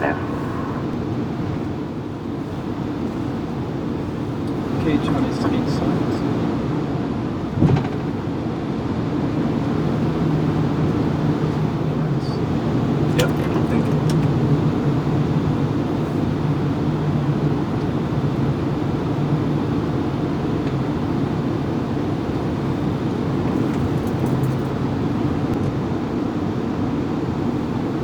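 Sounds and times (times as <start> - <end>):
low hum: 0.0 - 3.6
aircraft engines idling: 0.0 - 28.0
cockpit air hum: 0.0 - 28.0.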